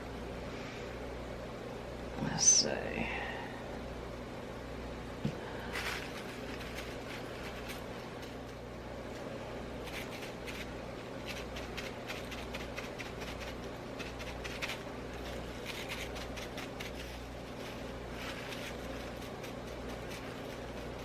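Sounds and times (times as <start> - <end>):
steady low hum: 0.0 - 21.0
scratching and ticking on plastic: 5.8 - 21.0.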